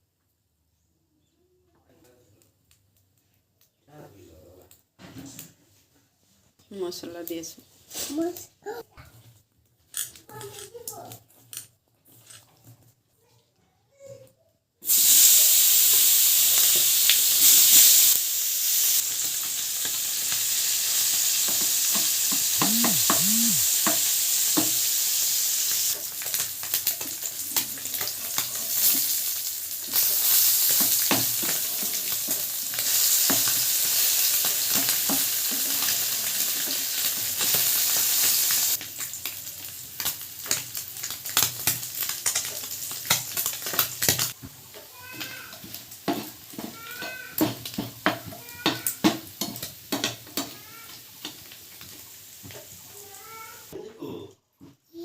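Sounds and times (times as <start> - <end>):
fish sizzling in hot oil: 14.8 - 53.8.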